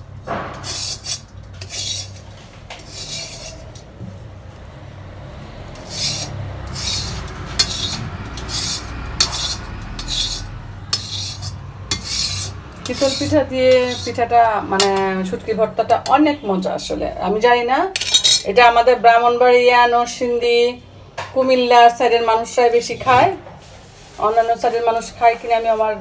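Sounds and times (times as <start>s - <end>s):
stone roller grinding on stone: 0.5s - 3.9s, 5.7s - 15.0s.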